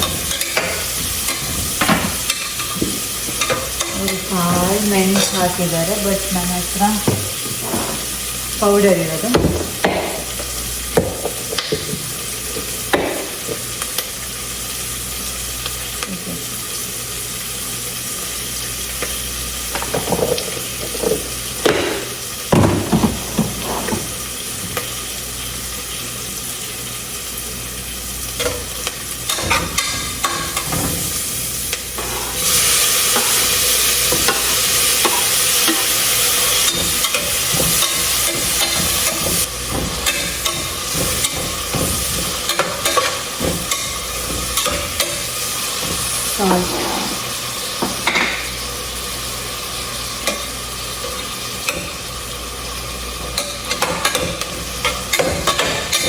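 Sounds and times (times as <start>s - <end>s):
spoon scraping and knocking pan: 0.0s - 6.1s, 6.8s - 8.3s, 9.2s - 13.6s, 19.0s - 24.9s, 28.4s - 47.2s, 53.1s - 56.0s
onions sizzling in oil: 0.0s - 56.0s.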